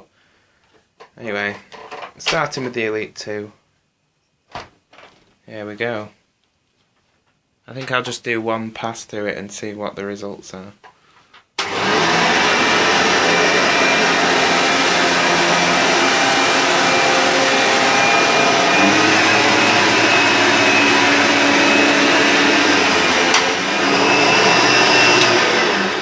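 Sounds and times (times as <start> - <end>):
vacuum cleaner running: 11.6 - 26.0.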